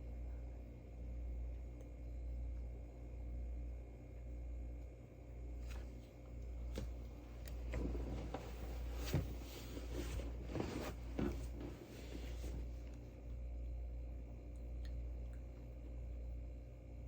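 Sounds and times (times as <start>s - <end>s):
low room hum: 0.0s - 17.0s
short rustles: 7.5s - 13.0s.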